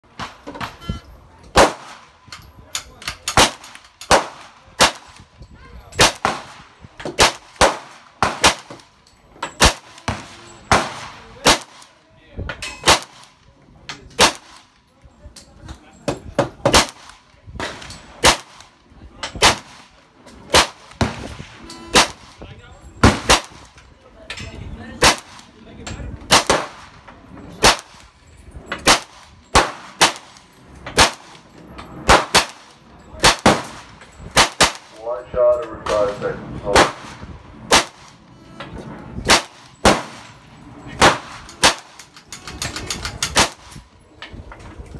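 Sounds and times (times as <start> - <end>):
loud gunshots: 1.6 - 2.1, 3.4 - 5.2, 6.0 - 8.8, 9.6 - 11.9, 16.7 - 18.7, 19.4 - 19.9, 20.5 - 22.4, 23.0 - 23.7, 25.0 - 25.5, 26.3 - 27.0, 27.6 - 28.0, 28.8 - 30.4, 31.0 - 31.3, 32.1 - 34.9, 36.7 - 38.2, 39.3 - 40.3, 41.0 - 42.0
carbine single shots: 32.1 - 38.2, 41.0 - 42.0.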